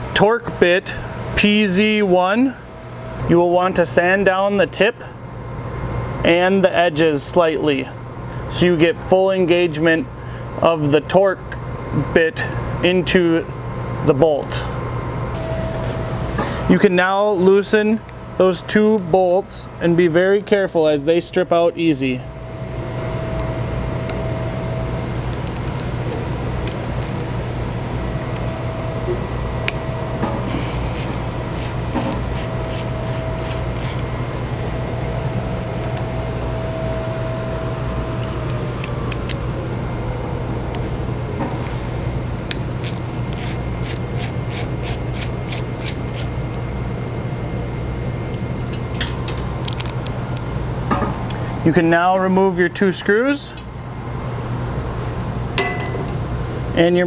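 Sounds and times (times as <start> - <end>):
steady low hum: 0.0 - 57.0
screwdriver clicking: 25.3 - 25.9, 26.6 - 27.3, 30.4 - 36.1, 42.5 - 46.6.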